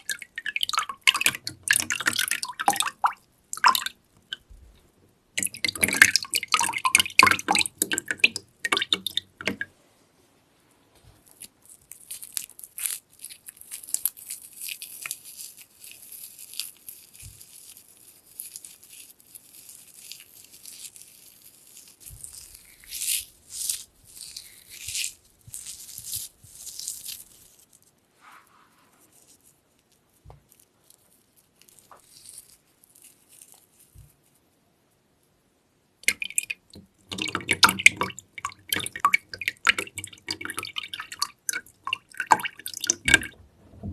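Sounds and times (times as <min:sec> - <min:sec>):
water splashing: 0:00.0 - 0:04.4, 0:05.4 - 0:09.7, 0:36.0 - 0:43.9
fine dripping and crackling: 0:00.0 - 0:09.8, 0:10.9 - 0:34.4, 0:36.0 - 0:43.9.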